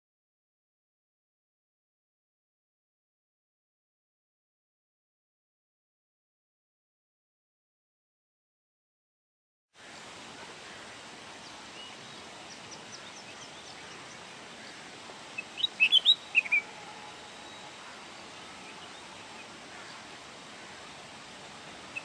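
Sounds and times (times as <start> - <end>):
steady hiss: 9.8 - 22.0
songbird chirping: 9.9 - 22.0.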